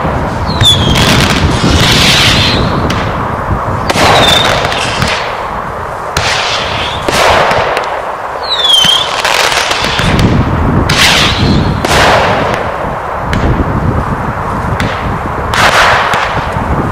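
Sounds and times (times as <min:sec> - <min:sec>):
fireworks bangs and crackle: 0:00.0 - 0:16.9
falling firework whistle: 0:00.4 - 0:03.0, 0:03.8 - 0:05.3, 0:06.2 - 0:07.7, 0:08.4 - 0:10.2, 0:10.9 - 0:12.3.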